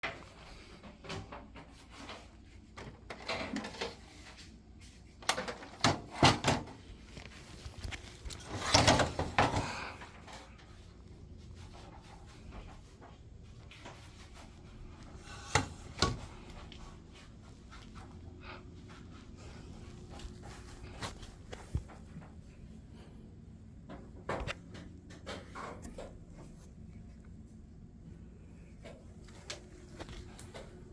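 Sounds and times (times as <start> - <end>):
knocks and clatter of handling: 0.0 - 4.5, 5.1 - 10.9, 15.2 - 18.1.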